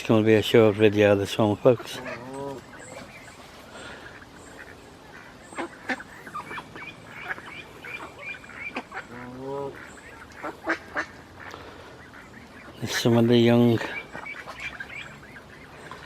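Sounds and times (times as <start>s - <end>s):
goose honk: 1.8s - 2.7s, 4.0s - 12.7s
short high waterfowl calls: 1.8s - 12.8s.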